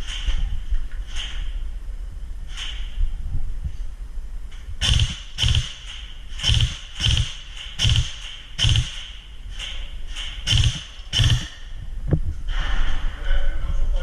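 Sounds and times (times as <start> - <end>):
heavy footsteps: 4.8 - 13.1.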